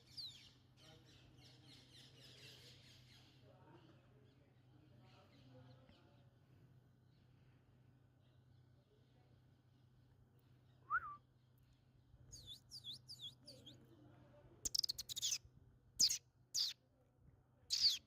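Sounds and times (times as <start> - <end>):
parakeet chirps: 12.4 - 13.8, 14.7 - 15.4, 16.0 - 16.8, 17.7 - 18.0
parakeet screeches: 17.7 - 18.0.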